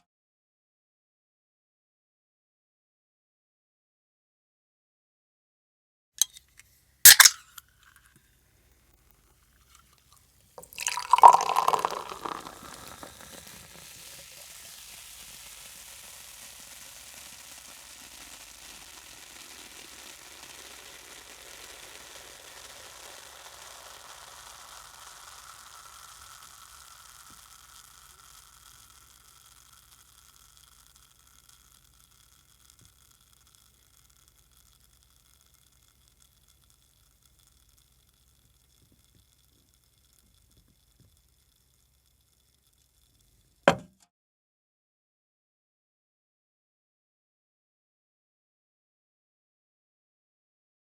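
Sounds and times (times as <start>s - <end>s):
soda pouring with splash: 7.1s - 7.4s, 10.6s - 43.2s
soda can tab click: 7.1s - 7.5s
carbonation fizzing hiss: 10.6s - 42.2s.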